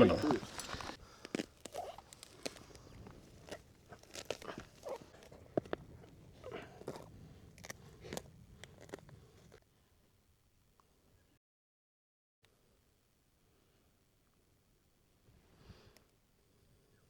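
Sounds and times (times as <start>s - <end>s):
crunching and rustling: 0.0s - 9.6s.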